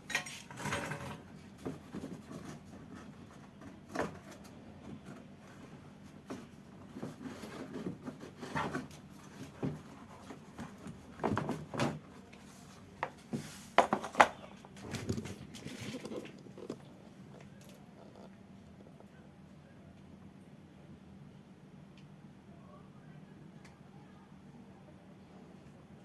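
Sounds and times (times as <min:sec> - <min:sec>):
knocks and rattles of tools: 0:00.0 - 0:02.7.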